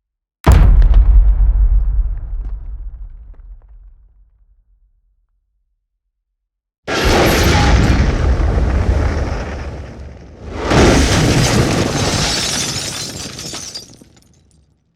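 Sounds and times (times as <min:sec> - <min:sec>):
explosion blast with deep rumble: 0:00.5 - 0:04.9, 0:06.9 - 0:12.4
crackling debris: 0:06.9 - 0:14.7.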